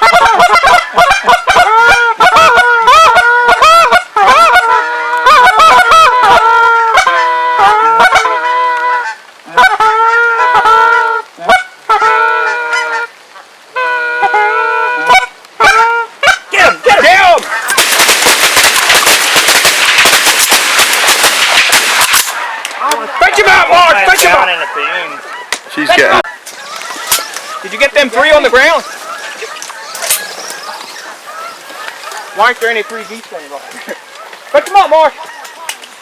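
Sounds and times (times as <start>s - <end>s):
geese honking and clucking: 0.0s - 36.0s.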